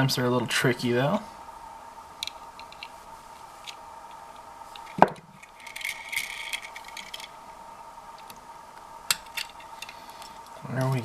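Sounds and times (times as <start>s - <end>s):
small parts scraping and rattling: 2.2s - 7.4s, 9.1s - 11.0s.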